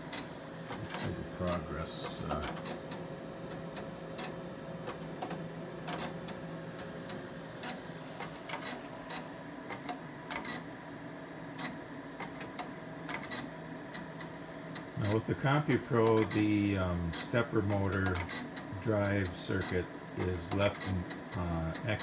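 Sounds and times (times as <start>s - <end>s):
steady hum: 0.0s - 22.0s.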